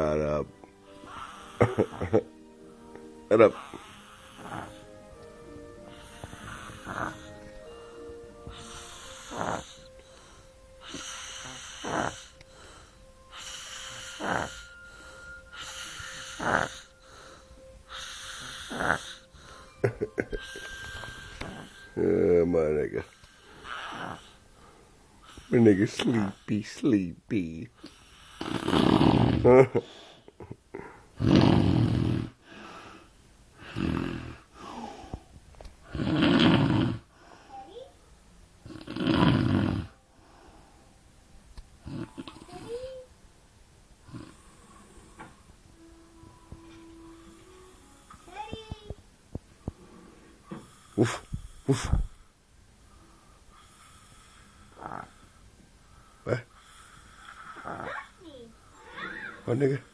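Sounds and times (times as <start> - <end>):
breathy hiss of air: 0.7 - 2.9, 3.6 - 27.0, 27.7 - 38.1, 39.5 - 41.0, 44.0 - 46.0, 49.6 - 59.9
loud rough snoring: 3.3 - 4.9, 6.0 - 7.4, 8.6 - 9.9, 10.8 - 12.4, 13.4 - 14.8, 15.6 - 17.0, 17.9 - 19.3, 20.5 - 22.2, 23.3 - 24.4, 28.1 - 29.8, 31.2 - 32.4, 33.6 - 34.9, 35.8 - 37.1, 38.6 - 40.0, 41.8 - 42.7, 44.1 - 45.2, 53.6 - 55.4, 56.3 - 58.1
soft breath out: 34.5 - 35.4, 37.1 - 38.0.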